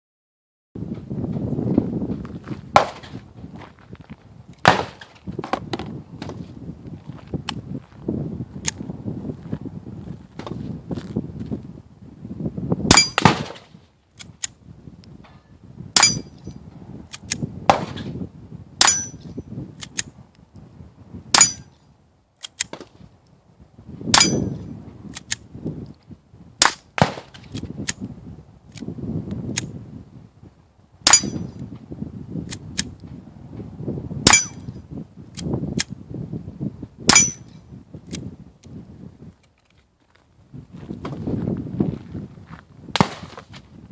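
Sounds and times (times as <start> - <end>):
bullet ringing steel plate: 12.9 - 13.2, 16.0 - 16.4, 18.8 - 19.3, 21.4 - 21.8, 24.2 - 24.6, 31.1 - 31.5, 34.3 - 34.8, 37.1 - 37.6
suppressed pistol shots: 12.9 - 13.7, 16.0 - 16.3, 18.8 - 19.2, 21.4 - 21.7, 24.1 - 24.5, 31.1 - 31.4, 34.3 - 34.6, 37.1 - 37.4
pistol handling noise: 17.1 - 18.1, 18.8 - 20.4, 22.4 - 23.0, 25.1 - 26.0.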